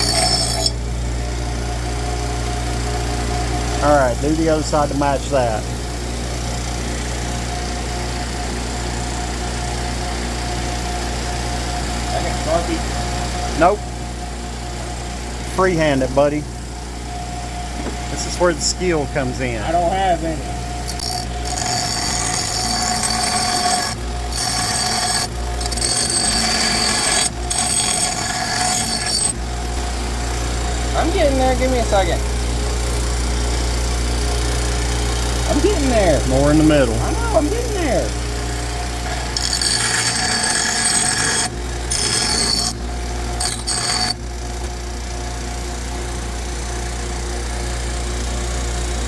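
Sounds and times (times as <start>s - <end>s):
angle grinder grinding metal: 0.0s - 0.8s, 20.8s - 29.8s, 35.5s - 44.2s.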